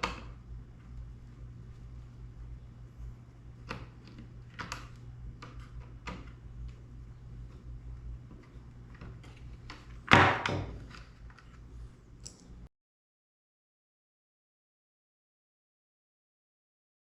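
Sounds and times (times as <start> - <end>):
faint steady hum: 0.0 - 12.7
loud clunk: 10.1 - 10.8.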